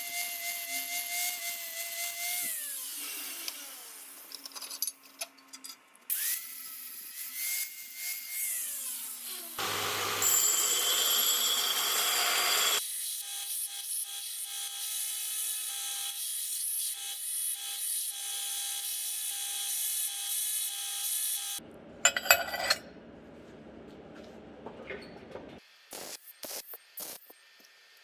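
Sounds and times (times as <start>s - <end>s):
power drill whining: 8.5s - 12.8s.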